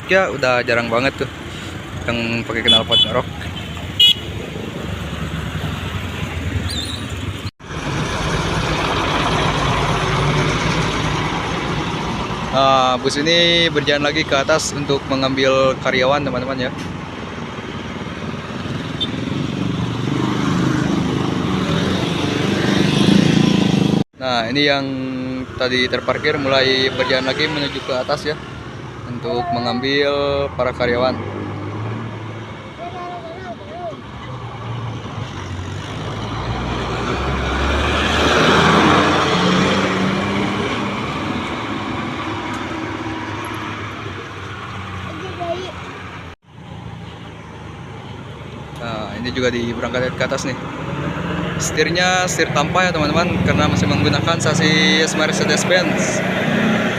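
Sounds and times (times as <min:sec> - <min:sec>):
diesel bus engine growling: 0:00.0 - 0:56.9.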